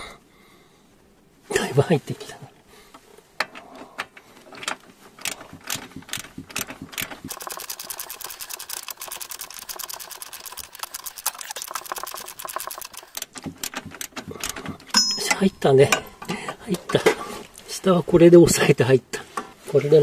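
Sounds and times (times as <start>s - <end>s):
ratchet wrench clicking: 5.2s - 14.2s.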